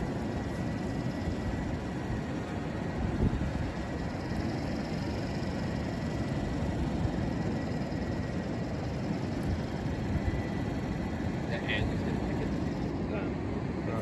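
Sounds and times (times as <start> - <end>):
wind buffeting microphone: 0.0 - 13.0
faint thin whine: 0.0 - 14.0.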